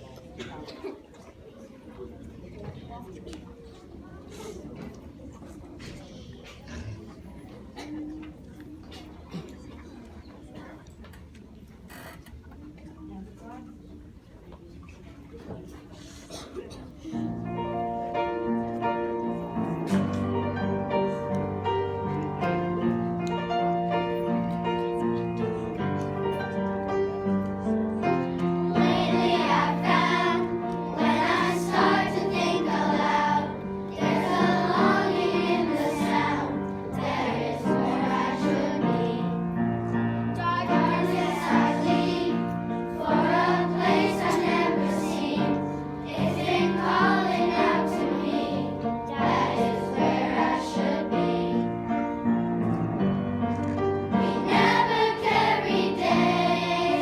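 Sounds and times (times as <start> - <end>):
choir singing: 28.0 - 52.0, 54.0 - 57.0.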